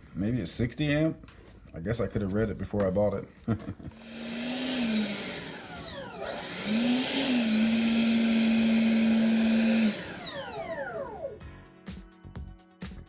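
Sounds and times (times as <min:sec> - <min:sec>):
electric ducted fan whining: 0:04.0 - 0:11.4.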